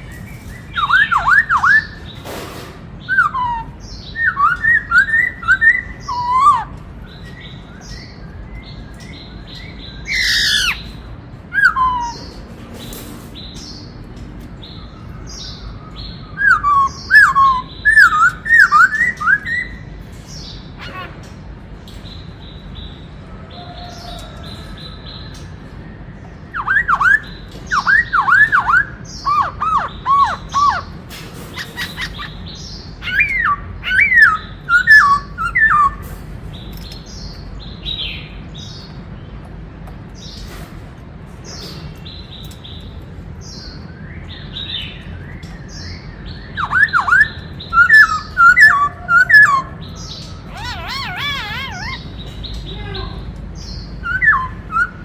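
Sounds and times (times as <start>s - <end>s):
bird whistled song: 0.0s - 2.3s, 3.0s - 12.4s, 14.6s - 21.0s, 23.6s - 36.1s, 43.4s - 52.8s, 53.6s - 55.0s
bird warbling: 10.1s - 11.0s, 26.6s - 36.0s, 46.6s - 52.8s.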